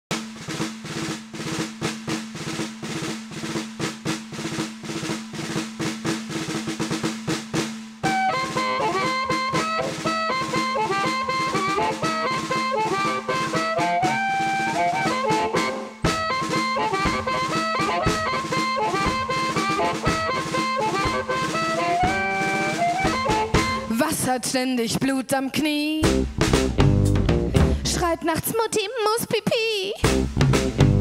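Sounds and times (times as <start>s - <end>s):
fast snare drum pattern: 0.1s - 24.4s, 26.0s - 28.1s, 30.0s - 31.0s
music melody: 6.3s - 24.0s.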